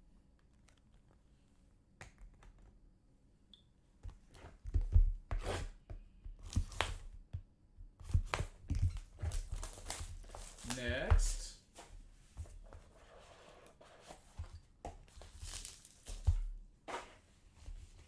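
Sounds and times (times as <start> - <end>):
packaging ripping and rustling: 9.1 - 11.4, 15.2 - 16.3.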